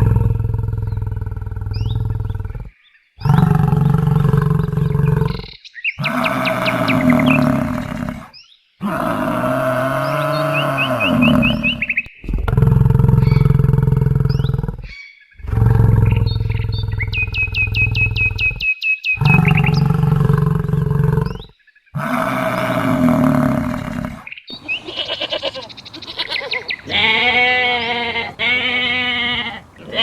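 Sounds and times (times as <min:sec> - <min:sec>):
deep roar-like animal calls: 0:00.0 - 0:18.3, 0:19.2 - 0:30.0.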